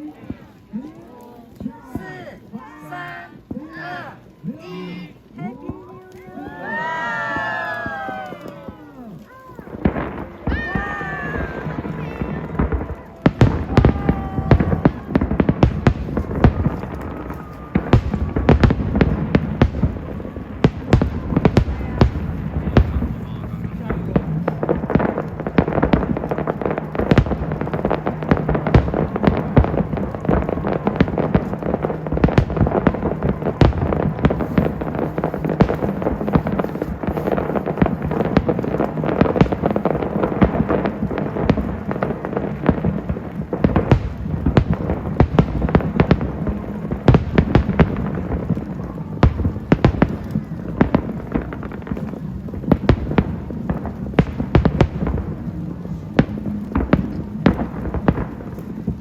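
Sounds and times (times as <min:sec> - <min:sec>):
fireworks bangs and crackles: 0:00.0 - 0:59.0.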